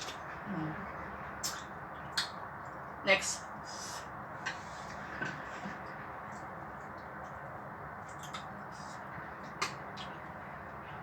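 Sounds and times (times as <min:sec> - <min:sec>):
eating noodles clicks and smacks: 0:01.4 - 0:02.4, 0:06.3 - 0:08.7, 0:09.4 - 0:10.2.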